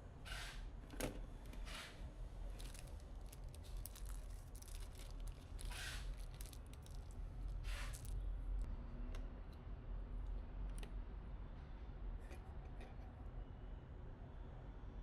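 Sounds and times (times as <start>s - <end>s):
packaging rustles: 2.5s - 7.2s.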